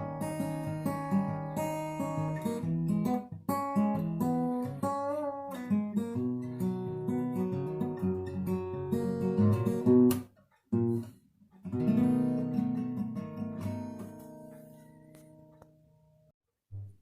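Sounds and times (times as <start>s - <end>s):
acoustic guitar plucked: 0.0s - 17.0s.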